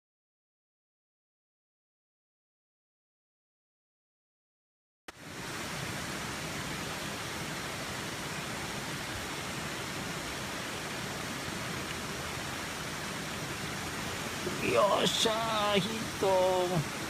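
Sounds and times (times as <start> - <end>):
stream water rushing: 5.1 - 17.0.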